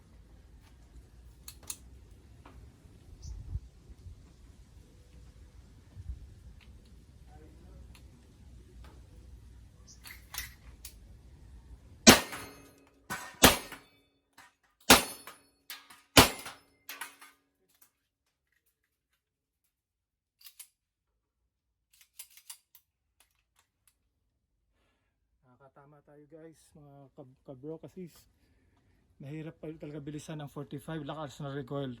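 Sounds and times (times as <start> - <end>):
pistol shots: 12.0 - 13.8, 14.9 - 15.4, 16.2 - 17.0.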